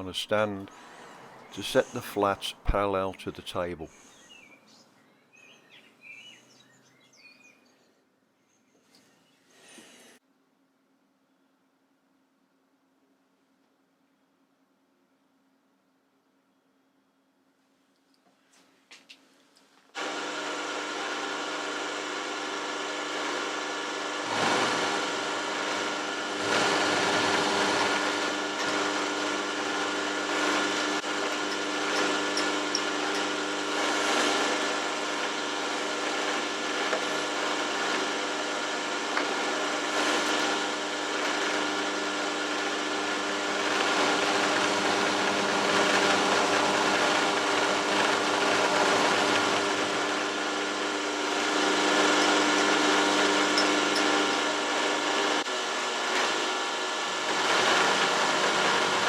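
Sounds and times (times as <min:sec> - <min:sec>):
milling machine motor humming: 0:20.0 - 0:59.0
cutter rasping on steel: 0:24.2 - 0:38.5, 0:47.0 - 0:55.1.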